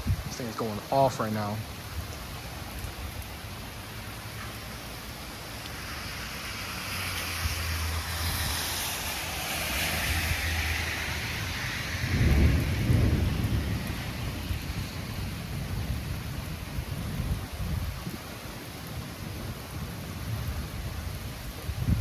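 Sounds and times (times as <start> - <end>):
steady rain: 0.0 - 22.0
thunder rumbling: 5.8 - 18.2, 18.8 - 22.0.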